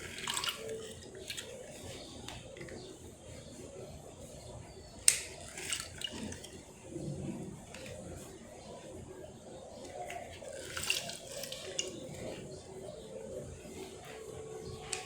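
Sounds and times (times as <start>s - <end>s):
juice dripping: 0.0s - 3.0s, 4.6s - 15.0s.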